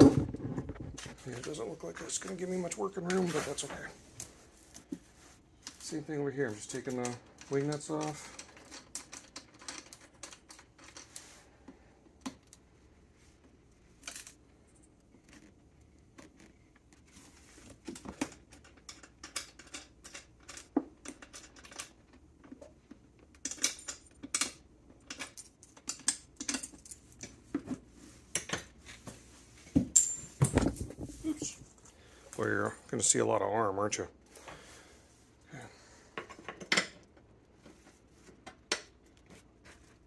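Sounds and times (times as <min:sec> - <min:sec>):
metal washers clinking: 0:23.4 - 0:27.4, 0:29.9 - 0:32.9.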